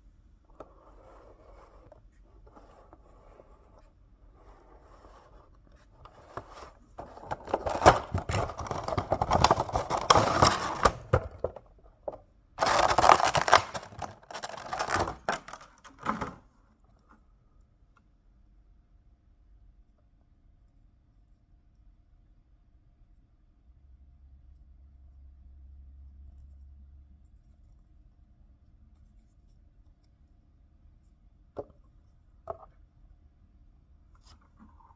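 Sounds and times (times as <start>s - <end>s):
cardboard and plastic rustling: 5.9s - 16.4s
packaging clicks: 7.3s - 11.1s, 12.6s - 15.8s.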